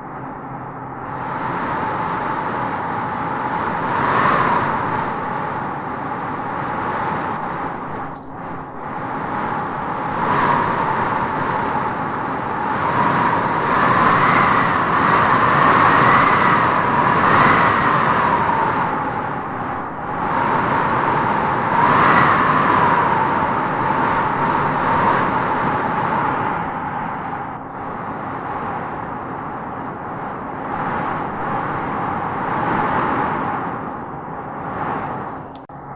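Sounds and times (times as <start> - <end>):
wind howling in gusts: 0.0 - 35.9.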